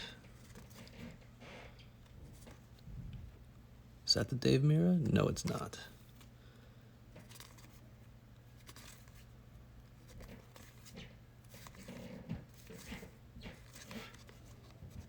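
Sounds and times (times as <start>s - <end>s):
low steady hum: 0.0s - 15.0s
cards rustling and scraping: 0.3s - 1.7s, 5.4s - 6.3s, 7.2s - 7.9s, 8.5s - 9.3s, 9.9s - 15.0s.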